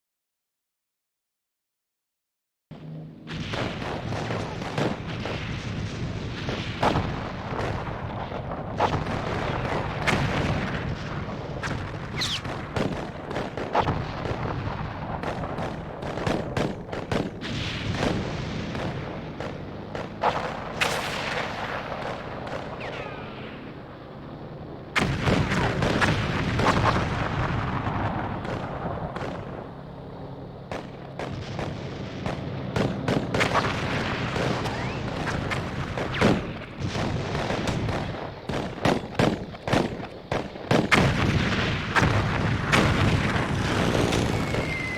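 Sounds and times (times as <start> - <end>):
gunshots: 3.2 - 23.9, 24.9 - 30.0, 30.6 - 44.9
artillery booms: 3.3 - 23.8, 24.9 - 29.7, 30.7 - 44.9
whistling tones: 12.2 - 12.4, 44.1 - 44.9.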